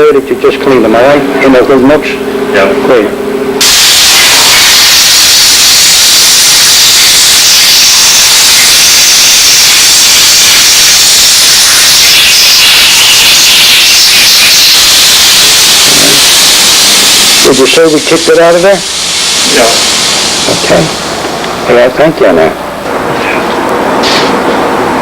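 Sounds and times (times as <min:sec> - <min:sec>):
steam cleaner hissing: 0:03.6 - 0:21.5.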